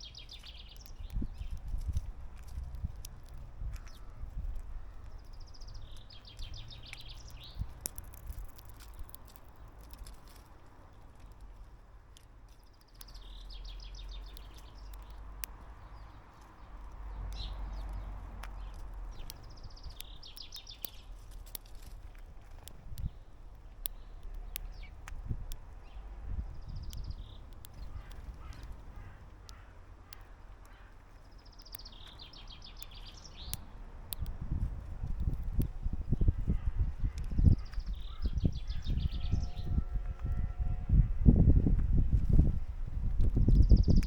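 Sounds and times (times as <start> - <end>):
songbird trilling: 0.0 - 1.6, 3.8 - 7.8, 12.6 - 15.2, 25.8 - 33.6, 36.1 - 39.9
songbird singing: 0.0 - 44.0
sharp clicks: 0.1 - 26.0, 26.6 - 39.1.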